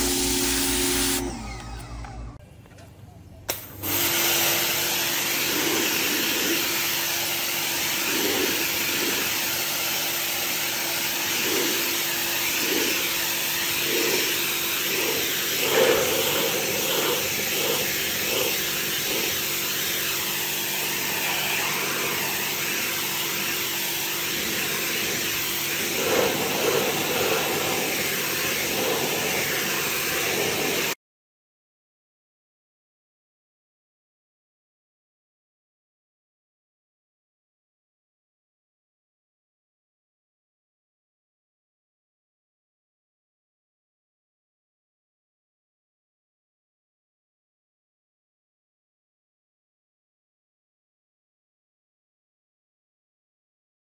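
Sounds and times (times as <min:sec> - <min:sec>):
pressure washer spraying: 0:00.0 - 0:01.3, 0:03.5 - 0:31.0
motor hum: 0:00.0 - 0:02.4.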